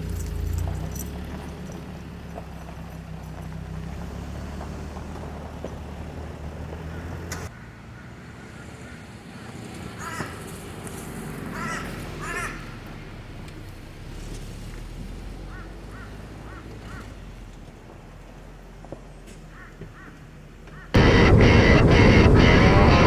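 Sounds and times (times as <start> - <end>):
crows cawing: 10.0 - 10.4, 11.5 - 12.6, 19.6 - 23.0.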